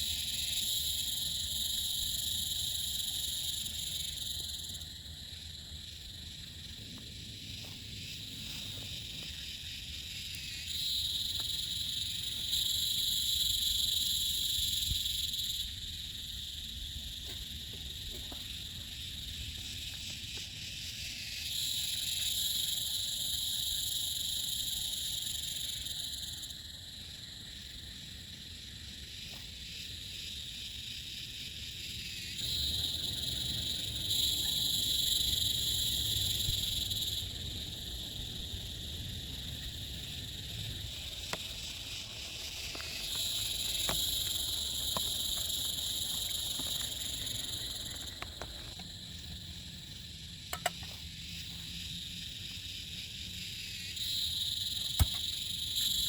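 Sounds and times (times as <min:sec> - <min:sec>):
insects calling: 0:00.0 - 0:56.0
frogs calling: 0:29.1 - 0:56.0.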